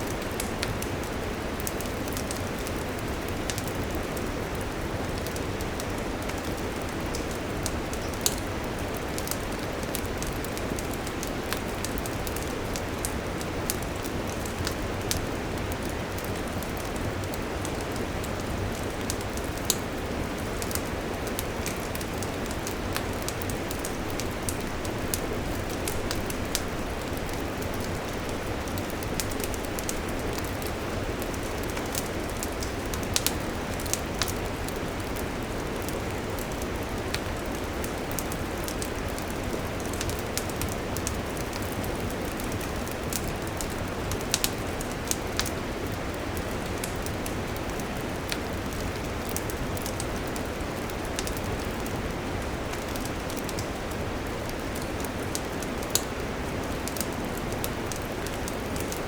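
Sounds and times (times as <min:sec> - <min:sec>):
campfire crackling and popping: 0:00.1 - 0:59.0.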